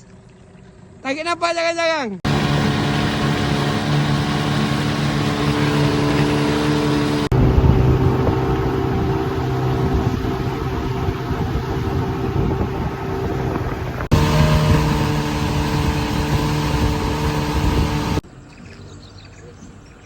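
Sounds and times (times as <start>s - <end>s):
boat motor running: 2.2s - 18.2s
wind and water rushing: 2.3s - 18.2s.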